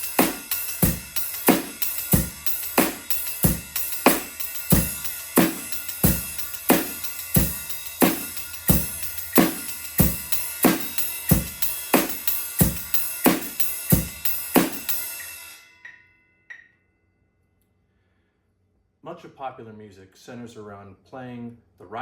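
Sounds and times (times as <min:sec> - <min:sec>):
drum kit playing rock beat: 0:00.0 - 0:15.6
cymbals ringing: 0:00.0 - 0:17.0.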